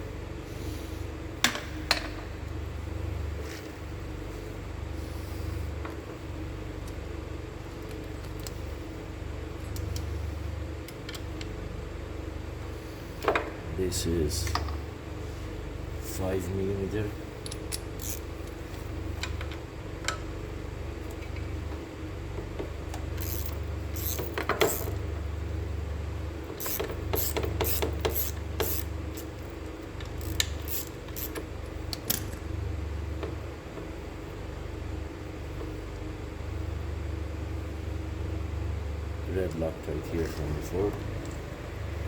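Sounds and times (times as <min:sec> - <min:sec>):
ratchet wrench clicking: 0:17.5 - 0:18.3, 0:23.2 - 0:25.0, 0:26.6 - 0:32.4.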